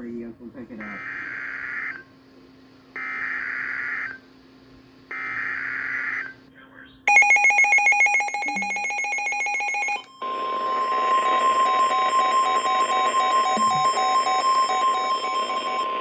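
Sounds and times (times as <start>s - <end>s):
steady high alarm tone: 7.1s - 16.0s
weather radio alarm beeping: 7.1s - 16.0s.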